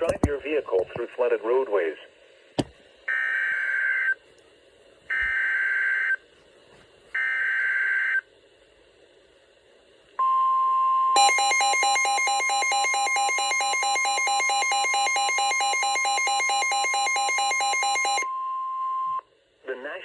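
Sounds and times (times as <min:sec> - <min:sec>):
rapidly pulsing alarm: 0:11.2 - 0:18.2
single-tone warning alarm: 0:11.2 - 0:19.2.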